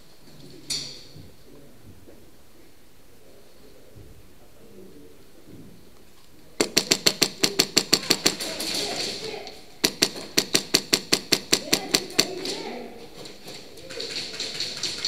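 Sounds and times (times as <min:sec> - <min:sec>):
airsoft rifle firing bursts: 0:06.6 - 0:12.8.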